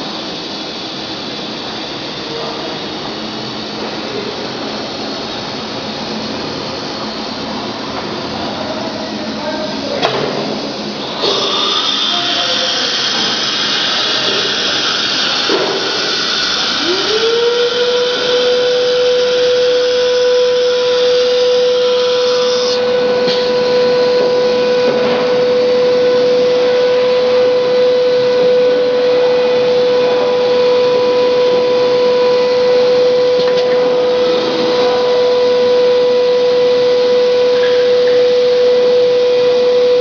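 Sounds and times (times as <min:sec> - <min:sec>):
router spindle whine: 0:10.7 - 0:40.0.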